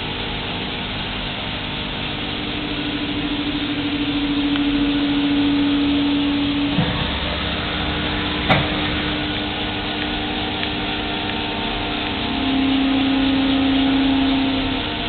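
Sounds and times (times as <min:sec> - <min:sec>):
milling machine whining: 0:00.0 - 0:15.0.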